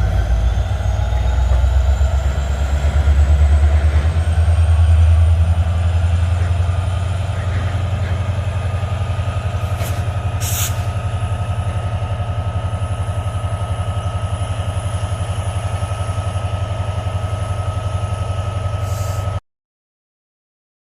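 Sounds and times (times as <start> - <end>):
locomotive engine droning: 0.0 - 19.4
air hiss: 9.8 - 10.9.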